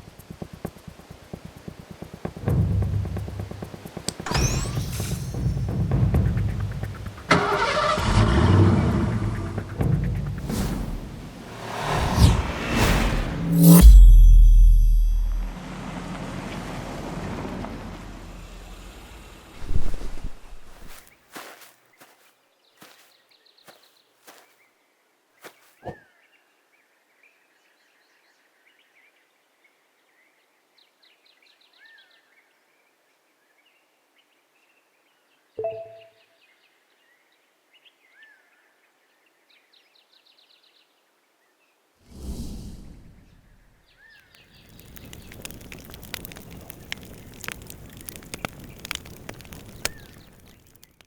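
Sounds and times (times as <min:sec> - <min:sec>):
crackling with sharp clicks: 0:44.3 - 0:51.0.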